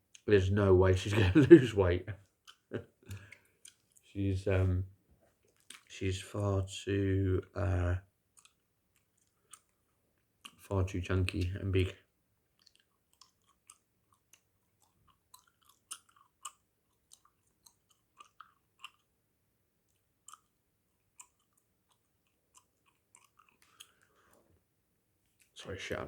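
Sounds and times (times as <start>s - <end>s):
gum chewing smacks and clicks: 2.2s - 4.1s, 5.4s - 5.9s, 8.3s - 10.7s, 12.5s - 19.2s, 19.9s - 24.1s.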